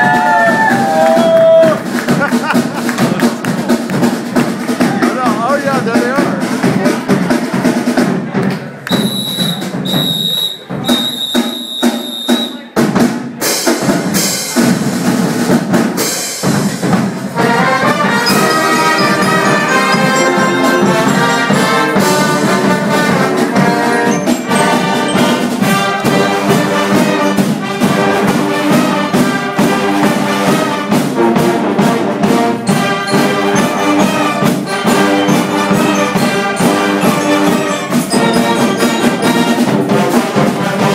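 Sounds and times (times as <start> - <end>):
brass and percussion band playing: 0.0 - 40.9
drums: 0.0 - 40.9
high tone in short blasts: 8.9 - 12.6.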